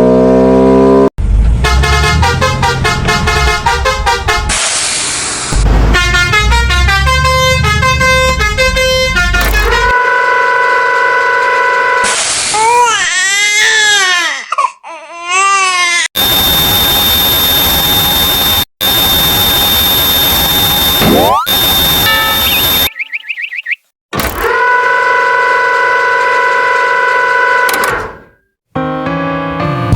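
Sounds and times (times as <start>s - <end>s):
car horn honk: 1.6s - 4.7s, 5.9s - 12.2s, 21.5s - 22.9s, 24.4s - 28.2s
short beeping notes: 16.2s - 23.2s
wavering siren wail: 16.2s - 23.6s.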